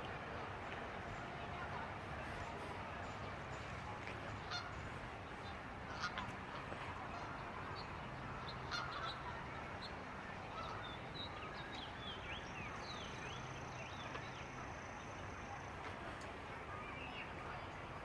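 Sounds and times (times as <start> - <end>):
geese honking: 4.4 - 4.8, 5.9 - 6.6, 8.6 - 9.4.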